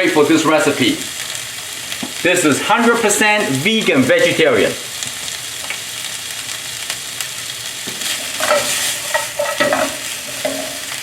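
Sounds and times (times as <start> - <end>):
vegetables sizzling in hot oil: 0.0 - 11.0
spatula scraping a pan: 7.9 - 11.0.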